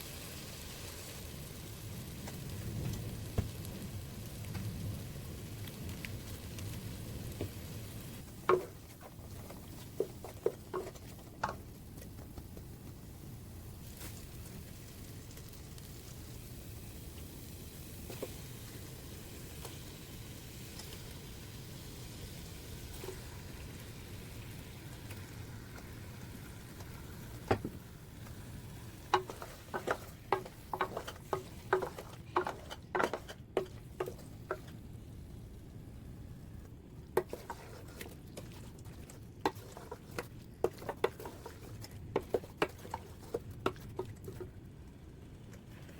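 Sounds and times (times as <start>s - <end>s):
food sizzling in a pan: 0.0s - 11.0s, 12.9s - 35.6s
utensil tapping a pan: 8.4s - 12.6s, 29.1s - 34.7s.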